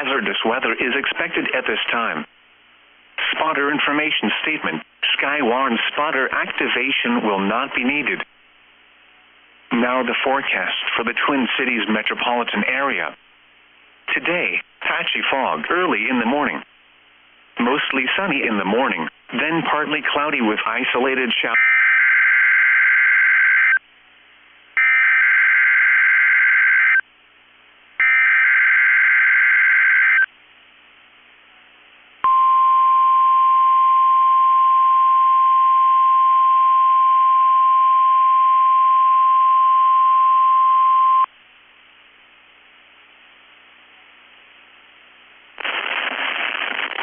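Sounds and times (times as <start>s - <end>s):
announcer speaking: 0.0s - 2.3s, 3.2s - 8.3s, 14.1s - 16.6s
steady alarm tone: 28.0s - 30.3s.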